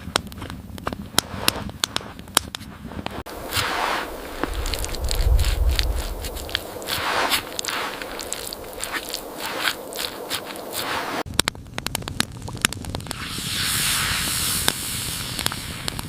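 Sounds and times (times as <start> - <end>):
footsteps crunching through snow: 3.3 - 11.3
campfire crackling and popping: 3.3 - 16.0.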